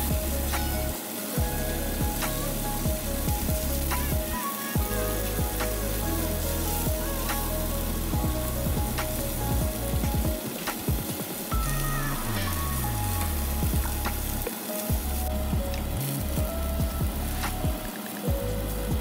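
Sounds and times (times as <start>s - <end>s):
food sizzling in a pan: 0.0s - 18.9s
background music with bass line: 0.0s - 19.0s.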